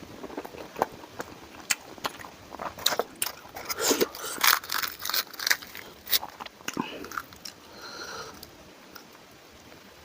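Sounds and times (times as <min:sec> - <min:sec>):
person chewing and crunching: 0:00.1 - 0:08.5.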